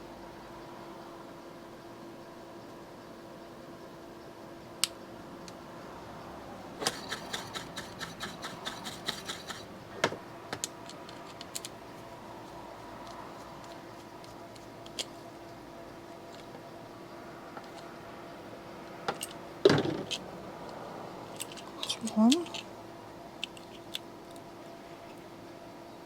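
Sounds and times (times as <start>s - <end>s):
steady hum: 0.0s - 26.0s
metal parts and tool clicking: 6.8s - 9.7s, 10.6s - 11.8s, 13.0s - 15.2s, 19.1s - 20.2s, 21.3s - 22.7s, 23.4s - 24.4s.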